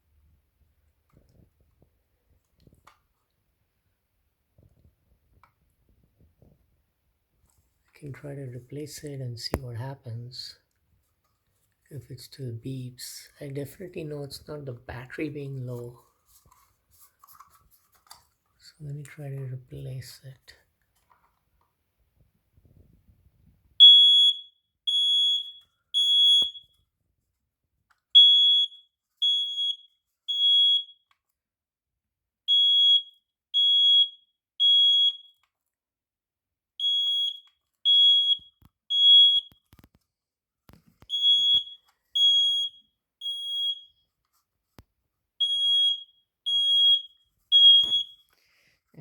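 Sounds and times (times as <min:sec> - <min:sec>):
smoke alarm beeping: 0:23.8 - 0:26.7, 0:28.2 - 0:31.0, 0:32.5 - 0:35.3, 0:36.8 - 0:39.7, 0:41.0 - 0:44.0, 0:45.4 - 0:48.3.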